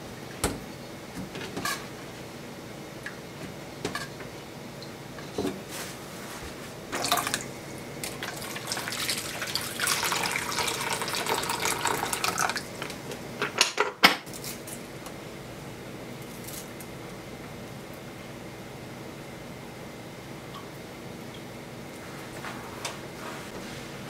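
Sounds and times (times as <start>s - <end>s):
water pouring: 7.0s - 7.5s, 8.1s - 12.7s.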